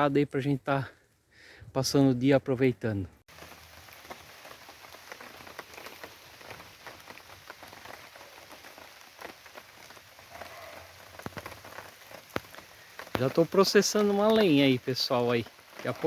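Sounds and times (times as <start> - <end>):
rain falling: 3.3 - 16.0
raindrops ticking on surfaces: 3.3 - 16.0.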